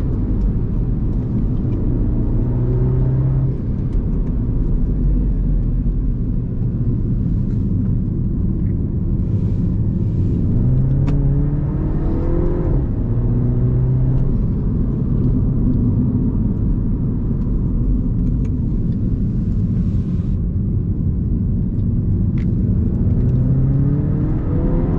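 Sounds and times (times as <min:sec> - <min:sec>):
car engine revving: 0:00.0 - 0:05.1, 0:09.3 - 0:16.3, 0:22.4 - 0:24.9
road and wind noise: 0:00.0 - 0:24.9.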